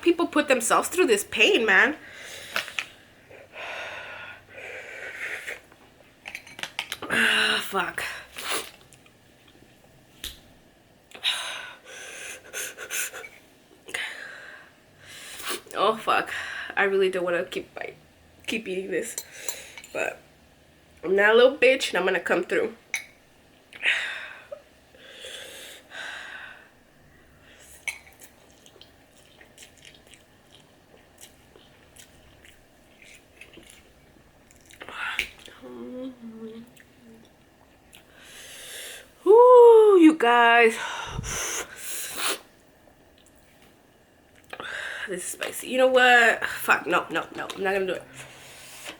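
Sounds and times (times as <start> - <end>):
person chewing noodles: 27.7 - 38.2
loud breaths: 40.8 - 42.2.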